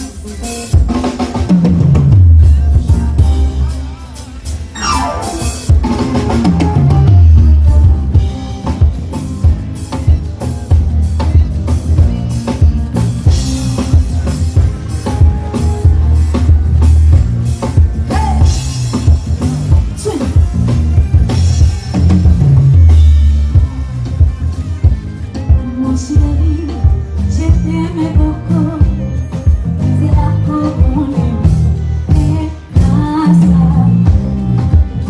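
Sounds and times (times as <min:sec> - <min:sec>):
loud music with heavy bass: 0:00.0 - 0:27.8
drum kit beat: 0:00.0 - 0:35.0.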